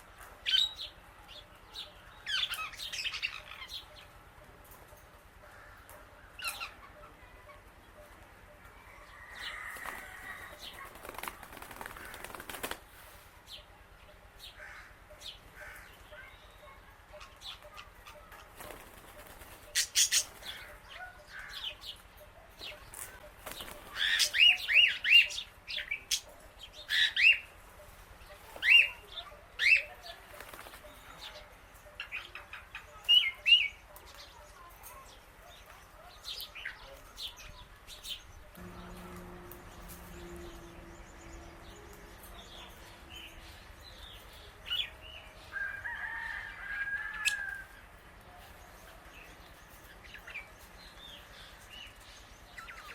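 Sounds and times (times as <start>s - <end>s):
birds chirping and squawking: 0.0s - 52.9s
wings flapping: 9.6s - 13.1s, 18.3s - 20.6s, 22.7s - 24.5s, 30.2s - 31.0s.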